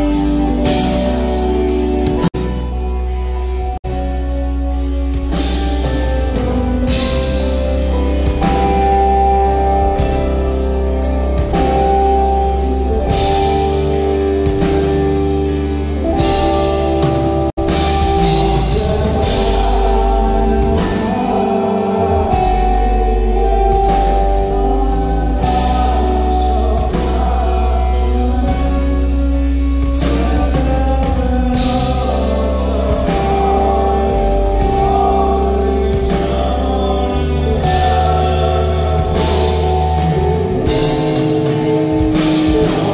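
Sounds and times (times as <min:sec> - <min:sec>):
live band instrumental music: 0:00.0 - 0:42.9.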